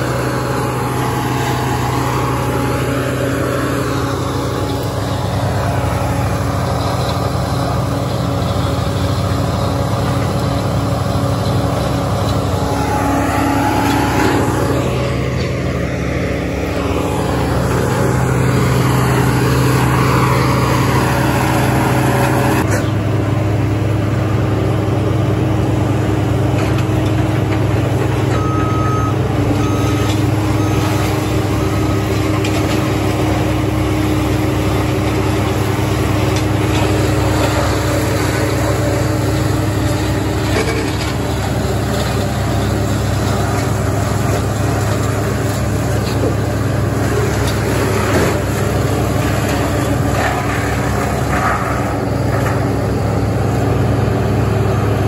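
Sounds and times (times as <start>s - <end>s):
heavy diesel machine running: 0.0s - 55.0s
short beeps: 28.3s - 31.1s.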